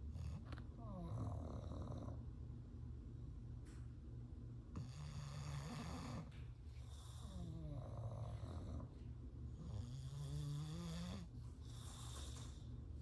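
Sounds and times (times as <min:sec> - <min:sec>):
dogs snoring: 0:00.0 - 0:02.4, 0:04.7 - 0:12.7.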